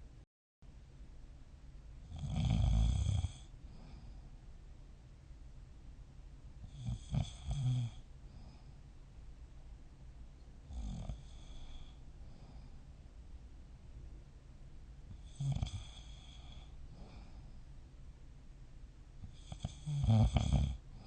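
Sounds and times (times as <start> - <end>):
person snoring: 2.1 - 4.0, 6.7 - 8.0, 10.7 - 12.6, 15.2 - 17.4, 19.3 - 20.8.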